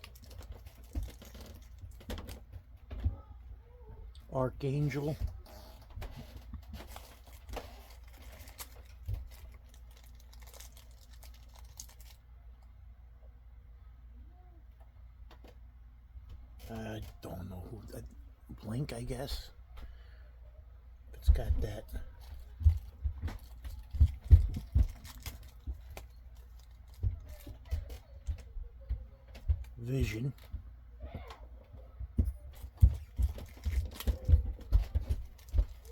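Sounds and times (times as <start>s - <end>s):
pins clicking and crinkling: 0.0s - 2.5s, 5.5s - 12.2s, 22.2s - 28.5s.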